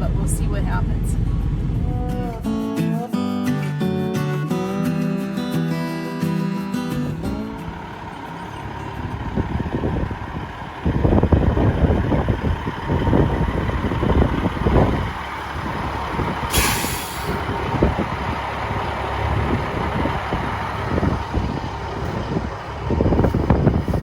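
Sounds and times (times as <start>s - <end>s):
truck engine rumbling: 0.0s - 24.0s
air brake hiss: 16.5s - 17.4s.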